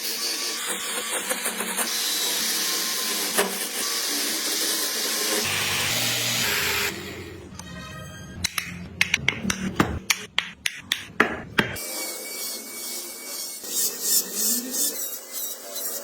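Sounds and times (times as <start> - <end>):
sharp taps on wood: 8.5 - 11.8.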